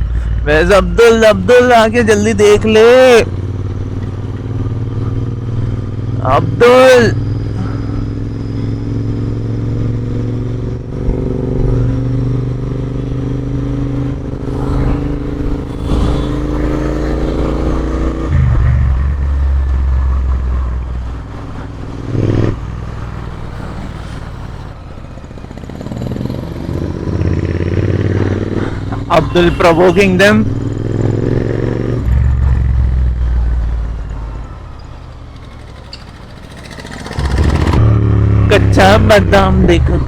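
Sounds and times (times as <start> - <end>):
motorcycle engine running: 0.0 - 6.5, 7.2 - 40.0.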